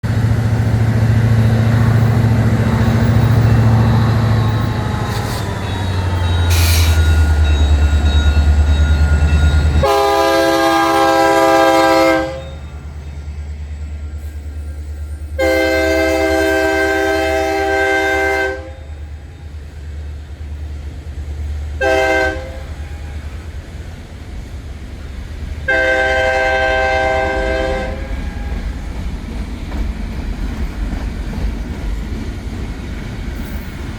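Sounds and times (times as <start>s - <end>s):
diesel locomotive engine rumble: 0.0s - 33.9s
locomotive air horn blasts: 9.8s - 12.7s, 15.4s - 19.0s, 21.8s - 23.4s, 25.6s - 28.7s.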